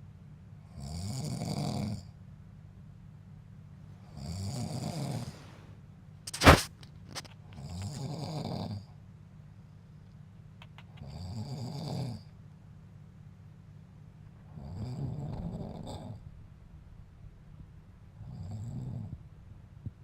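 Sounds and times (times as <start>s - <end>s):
sharp click: 6.3s - 7.4s.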